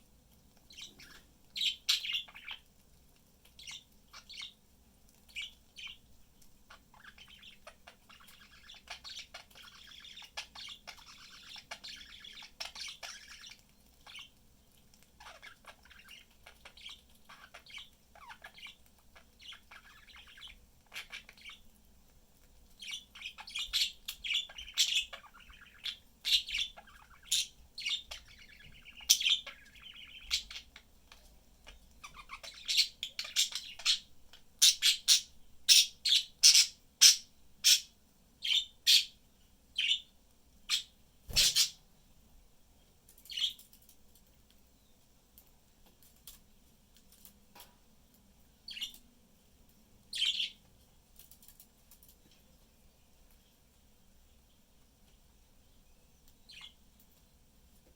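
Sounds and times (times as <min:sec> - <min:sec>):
budgerigars chirping and chattering: 0:00.7 - 0:02.7, 0:03.6 - 0:04.6, 0:05.3 - 0:06.1, 0:06.7 - 0:14.4, 0:15.2 - 0:21.6, 0:22.8 - 0:39.2, 0:39.8 - 0:40.1, 0:40.7 - 0:41.8, 0:43.2 - 0:43.7, 0:48.7 - 0:49.1, 0:50.1 - 0:50.6, 0:56.4 - 0:56.8.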